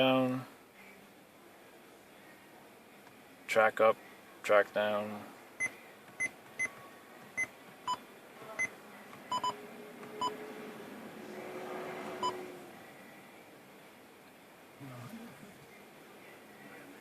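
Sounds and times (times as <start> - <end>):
car stereo key-press beeps: 5.6 - 6.7.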